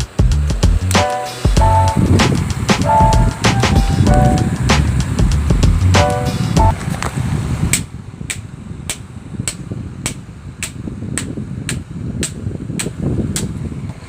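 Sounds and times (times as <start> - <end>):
loud rough noise: 0.0 - 7.1
low rumble: 1.6 - 7.0.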